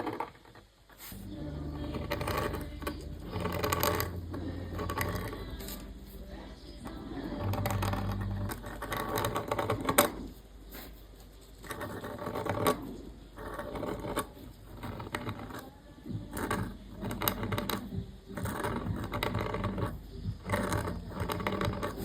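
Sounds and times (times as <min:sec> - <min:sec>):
pen nib scratching on paper: 0:06.8 - 0:22.0.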